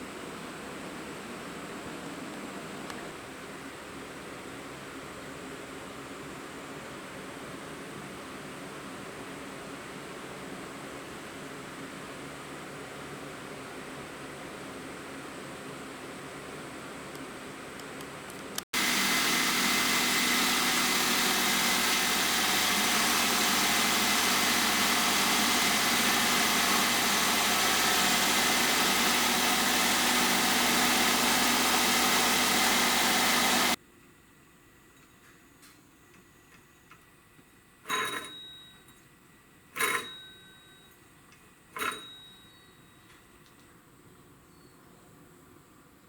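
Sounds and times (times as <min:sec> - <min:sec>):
van engine running: 0:18.8 - 0:33.8.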